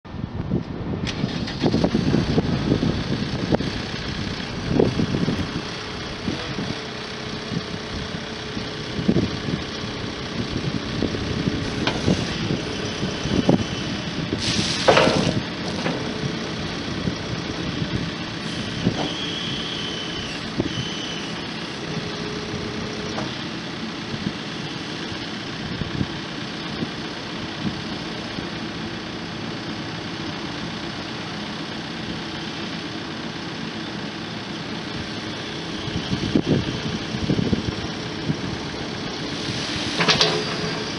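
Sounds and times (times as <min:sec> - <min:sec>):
diesel engine running: 0:00.1 - 0:40.9
clunks: 0:14.5 - 0:16.7, 0:18.8 - 0:19.5, 0:22.8 - 0:23.4, 0:39.8 - 0:40.9.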